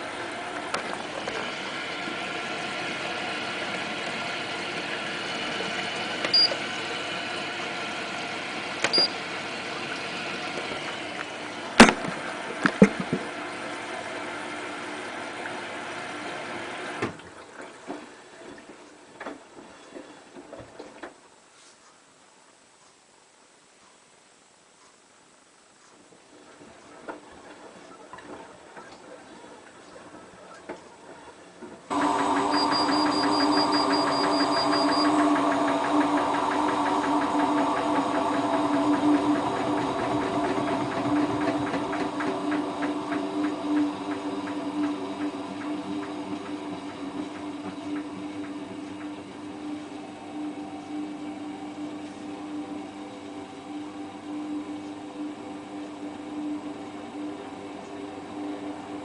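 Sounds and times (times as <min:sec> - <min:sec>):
washing machine water hiss: 0:31.9 - 0:48.3.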